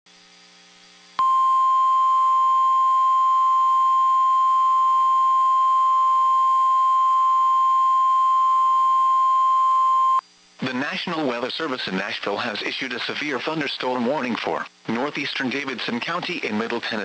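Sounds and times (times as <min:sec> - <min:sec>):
steady high-pitched alarm tone: 0:01.2 - 0:11.0.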